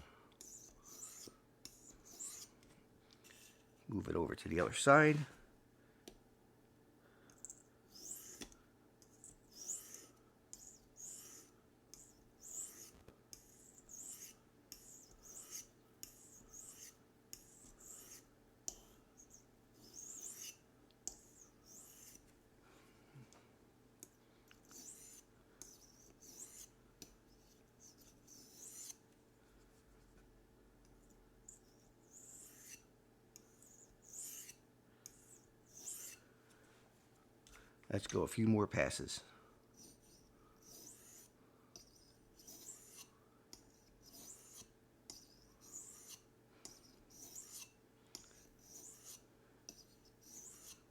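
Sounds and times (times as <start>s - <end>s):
knife scraping on sharpening stone: 0.4s - 2.5s, 3.2s - 3.7s, 7.9s - 22.2s, 24.6s - 29.0s, 31.5s - 36.2s, 39.8s - 50.9s.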